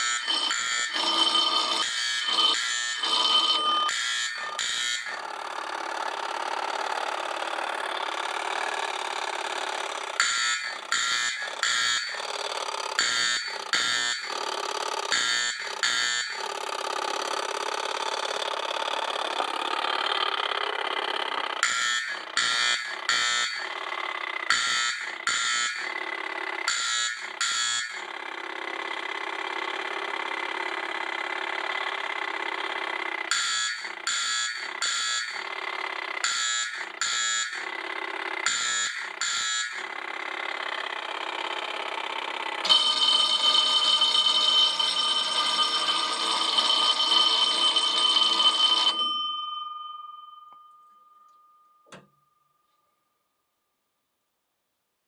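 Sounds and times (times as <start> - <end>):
fire alarm coded strokes: 0.0 - 5.2, 33.3 - 35.4, 42.6 - 49.8
high-pitched alarm bell: 0.0 - 5.2, 42.6 - 52.6.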